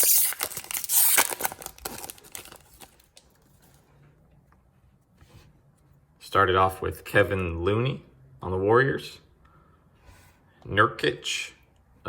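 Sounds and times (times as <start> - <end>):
wrapper tearing and crinkling: 0.0 - 3.4.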